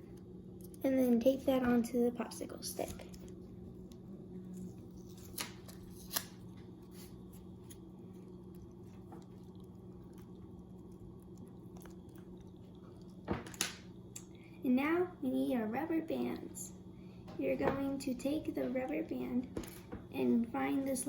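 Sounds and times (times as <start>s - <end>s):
steady low hum: 0.0s - 21.0s
sticky tape crackling clicks: 5.0s - 7.8s.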